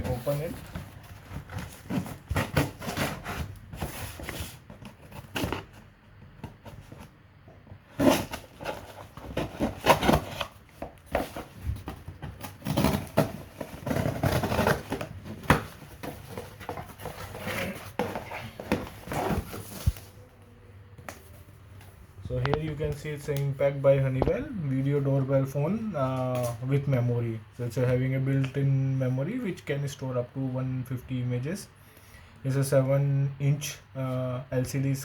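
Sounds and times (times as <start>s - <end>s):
cardboard scraping and tearing: 0.0s - 5.8s, 7.9s - 20.1s.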